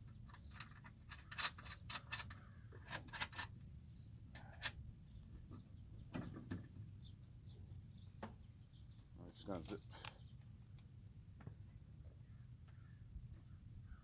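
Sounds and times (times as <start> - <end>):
metallic clicks of bolts and nuts: 0.3 - 3.5.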